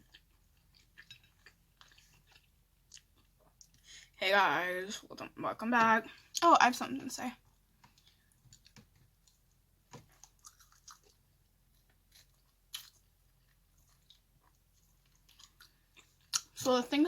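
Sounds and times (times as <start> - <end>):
close-up chewing: 0.0 - 3.9, 7.4 - 16.7.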